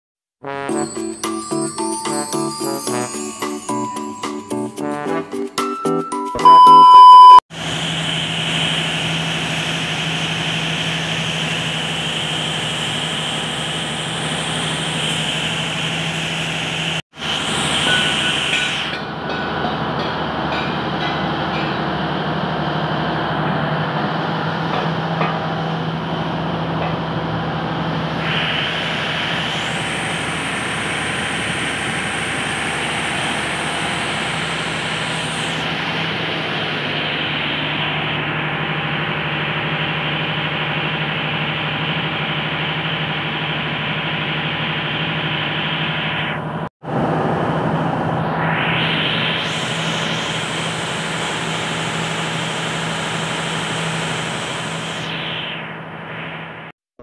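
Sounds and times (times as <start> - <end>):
diesel engine running: 7.6 - 48.1.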